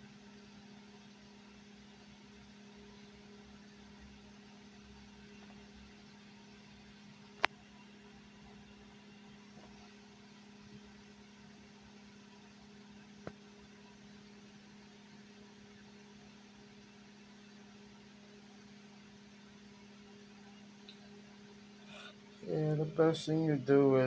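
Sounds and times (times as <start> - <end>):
low electrical hum: 0.0 - 24.0.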